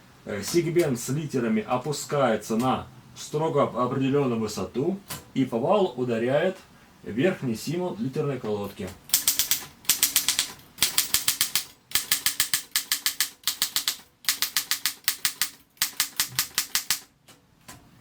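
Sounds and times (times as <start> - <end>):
typewriter typing: 9.1 - 17.1.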